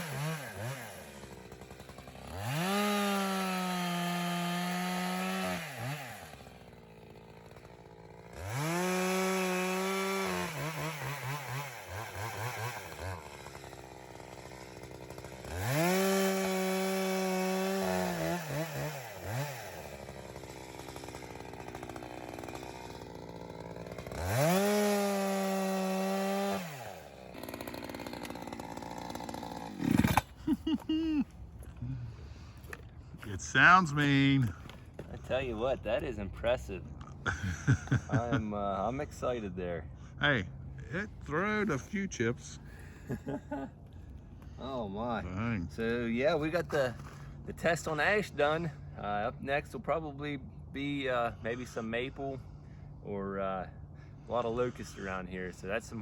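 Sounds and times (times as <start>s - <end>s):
chainsaw revving: 0.0s - 39.8s, 40.8s - 50.0s.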